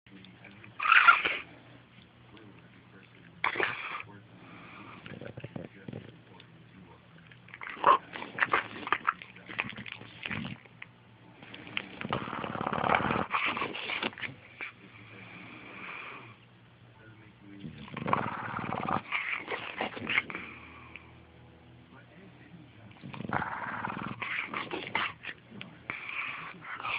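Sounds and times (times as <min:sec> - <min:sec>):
dog snoring: 0:03.4 - 0:06.5, 0:07.6 - 0:10.6, 0:11.4 - 0:16.4, 0:17.6 - 0:21.2, 0:22.9 - 0:26.9.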